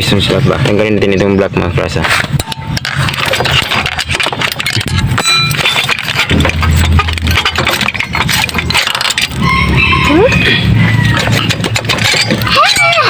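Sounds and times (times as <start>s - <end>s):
metal clinks and taps: 2.3s - 13.0s
short metallic ring: 5.2s - 12.9s.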